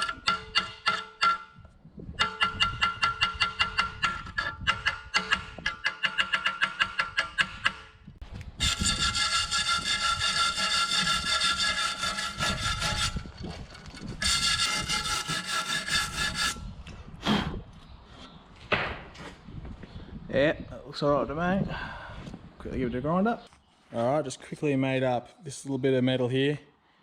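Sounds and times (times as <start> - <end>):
hacksaw cutting steel: 0.0 - 1.5, 2.2 - 7.9, 8.6 - 16.6
ringing metal taps: 0.0 - 7.9.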